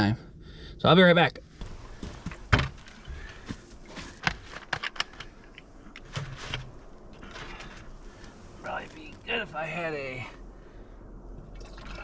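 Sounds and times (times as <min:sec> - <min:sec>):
dull thumps: 0:01.4 - 0:04.8.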